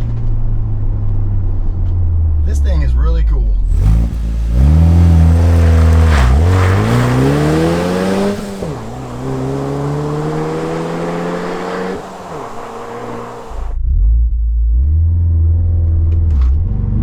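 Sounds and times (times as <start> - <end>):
car engine accelerating: 3.6 - 13.8.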